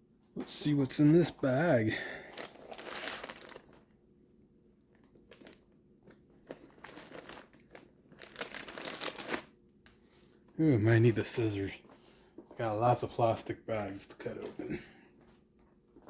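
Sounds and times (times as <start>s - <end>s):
plastic bag crinkling: 2.2s - 4.0s, 4.9s - 9.6s.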